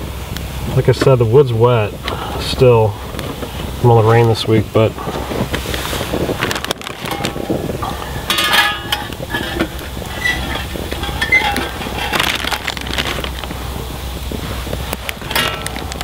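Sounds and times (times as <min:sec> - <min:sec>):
short metallic rings: 0:07.0 - 0:12.6, 0:15.2 - 0:16.0
metal cookware clinking and scraping: 0:07.0 - 0:12.7, 0:15.2 - 0:16.0.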